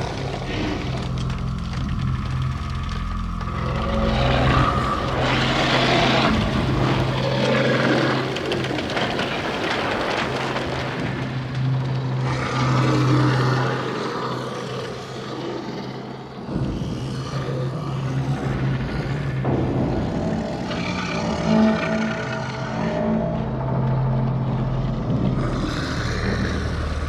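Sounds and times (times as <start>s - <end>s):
noisy swells: 0.0s - 16.4s
low drone: 0.0s - 27.0s.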